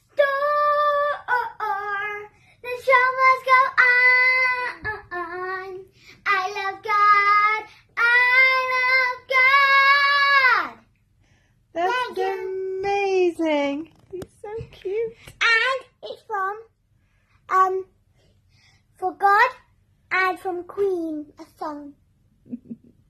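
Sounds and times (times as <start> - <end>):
child singing unaccompanied: 0.0 - 10.9, 11.9 - 12.8.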